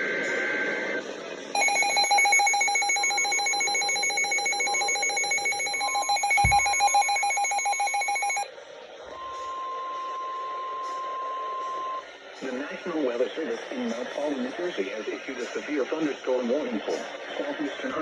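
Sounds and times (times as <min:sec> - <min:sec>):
electronic alarm beeping: 0:01.6 - 0:08.5
steady alarm tone: 0:01.6 - 0:08.5.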